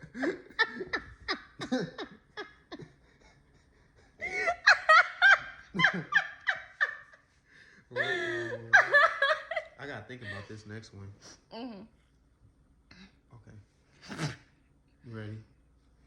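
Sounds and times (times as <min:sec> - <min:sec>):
person laughing: 0:00.0 - 0:07.1.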